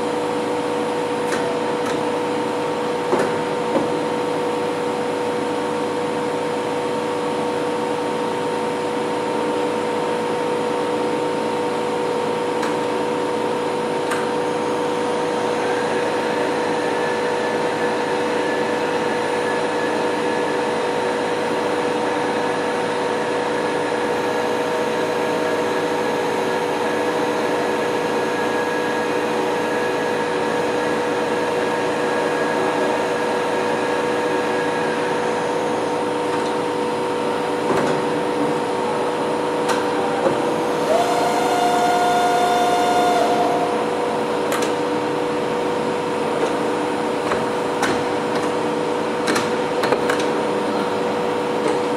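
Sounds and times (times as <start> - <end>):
milling machine motor whine: 0.0 - 48.4
higher machine tone: 39.8 - 46.9.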